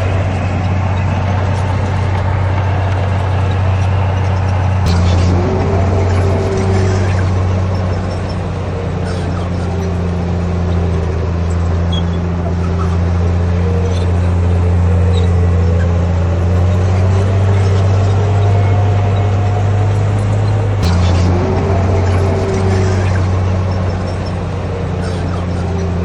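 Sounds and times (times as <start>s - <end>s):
bulldozer diesel engine droning: 0.0s - 26.0s
sharp click: 20.1s - 26.0s.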